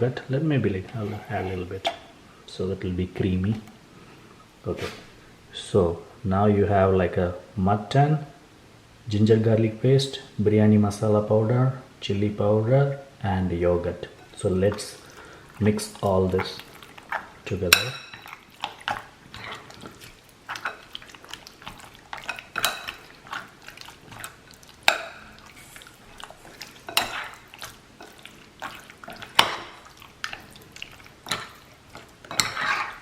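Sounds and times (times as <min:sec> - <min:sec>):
spoon scraping glass bowl: 0:00.9 - 0:02.1, 0:24.9 - 0:29.6, 0:31.3 - 0:33.0.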